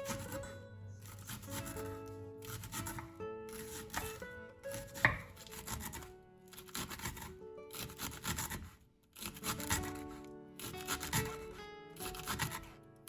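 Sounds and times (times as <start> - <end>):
classical guitar music: 0.0 - 8.1, 9.4 - 13.0.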